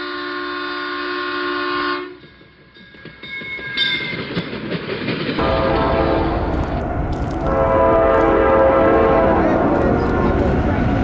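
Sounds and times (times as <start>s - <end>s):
locomotive air horn: 0.0s - 2.2s, 5.4s - 11.0s
train rumbling past: 2.1s - 11.0s.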